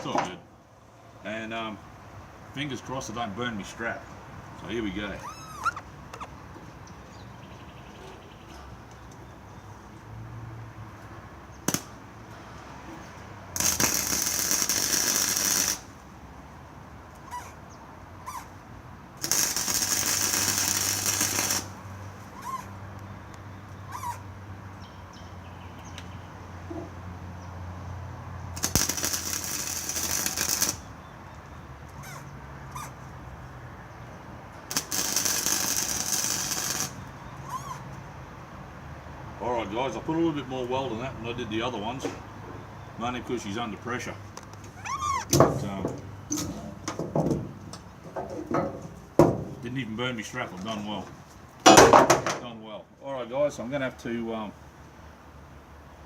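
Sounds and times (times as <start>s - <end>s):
crackling welding arc: 11.7s - 12.0s, 13.6s - 16.0s, 19.2s - 21.8s, 28.6s - 30.9s, 34.7s - 37.1s.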